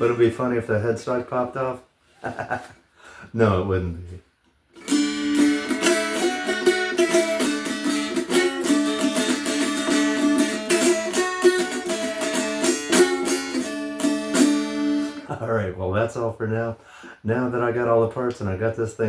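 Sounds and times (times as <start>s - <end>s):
dulcimer strummed: 4.8s - 15.3s.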